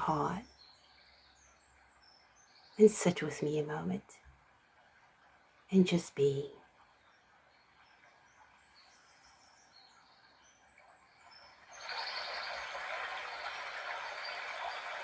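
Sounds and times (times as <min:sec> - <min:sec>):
faint bird chirps: 0:00.0 - 0:15.0.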